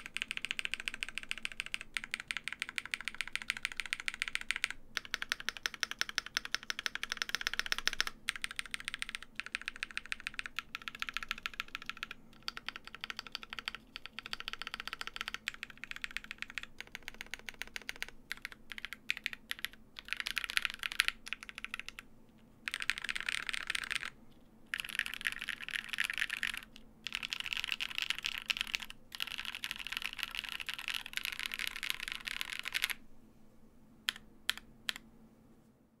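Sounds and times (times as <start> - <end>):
mechanical keyboard typing: 0.0 - 22.0, 22.6 - 33.0, 34.1 - 35.0.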